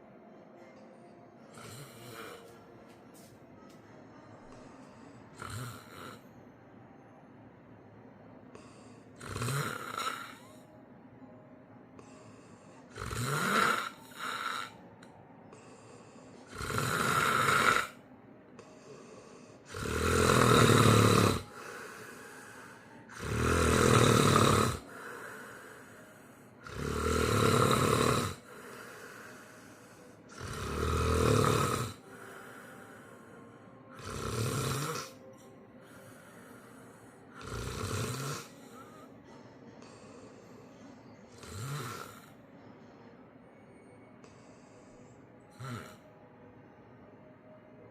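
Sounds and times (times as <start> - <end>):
quiet breathing: 0.0 - 47.9
person snoring loudly: 1.5 - 2.5, 4.6 - 6.2, 8.6 - 10.6, 12.0 - 14.8, 16.4 - 18.0, 18.7 - 35.2, 35.8 - 39.1, 41.3 - 42.4, 45.5 - 46.1.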